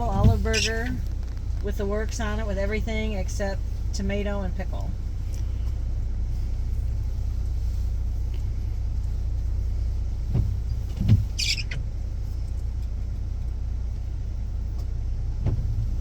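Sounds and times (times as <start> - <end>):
dull thumps: 0.0 - 2.5, 10.1 - 12.0
van engine idling: 0.0 - 16.0
brief high squeak: 11.4 - 11.8.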